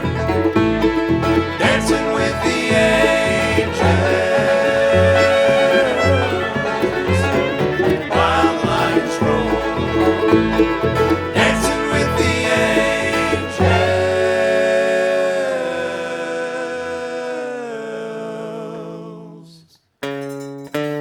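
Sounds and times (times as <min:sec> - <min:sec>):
steady low pulse: 0:00.0 - 0:14.0
bluegrass band playing: 0:00.0 - 0:16.3.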